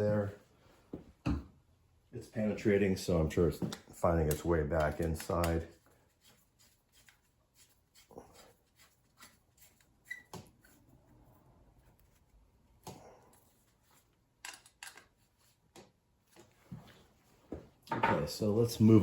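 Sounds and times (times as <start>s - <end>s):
faint clicks and knocks of tools: 3.6s - 6.0s, 14.4s - 16.6s.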